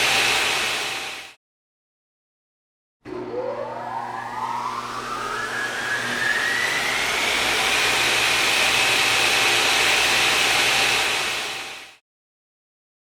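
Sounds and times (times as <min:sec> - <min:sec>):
motor whining at high speed: 0:03.1 - 0:11.8.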